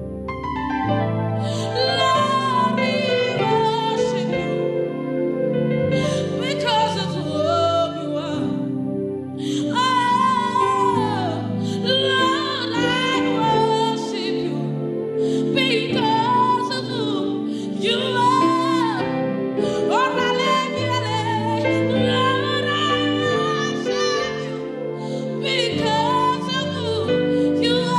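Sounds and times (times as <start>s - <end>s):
sustained low chords: 0.0s - 6.5s.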